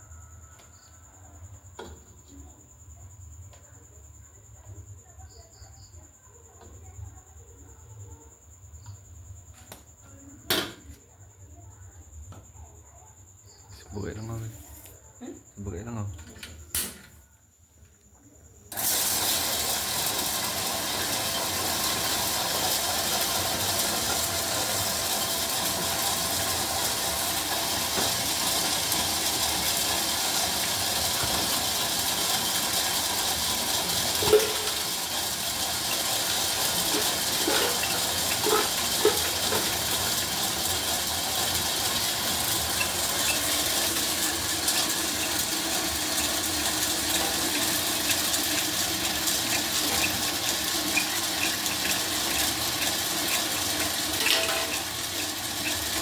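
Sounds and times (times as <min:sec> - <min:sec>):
popcorn machine hissing: 0:00.0 - 0:11.7, 0:13.9 - 0:17.5, 0:18.6 - 0:56.0.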